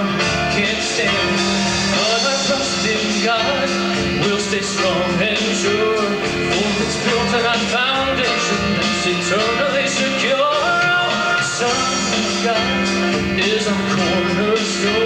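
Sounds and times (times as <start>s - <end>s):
rock song with singing: 0.0s - 15.0s.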